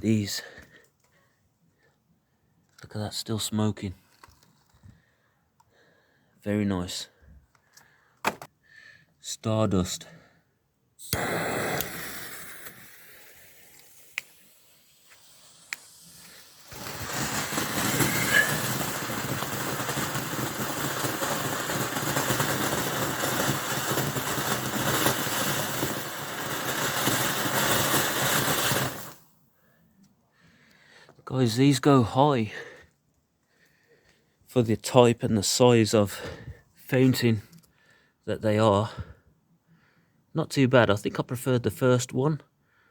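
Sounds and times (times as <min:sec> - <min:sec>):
fountain firework hissing: 0:11.0 - 0:29.3
short fizz: 0:11.2 - 0:29.2.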